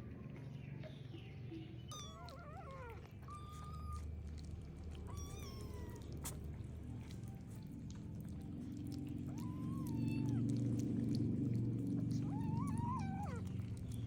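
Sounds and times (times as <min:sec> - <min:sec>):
low steady hum: 0:00.0 - 0:14.0
kittens mewing: 0:01.9 - 0:06.4, 0:09.0 - 0:13.8.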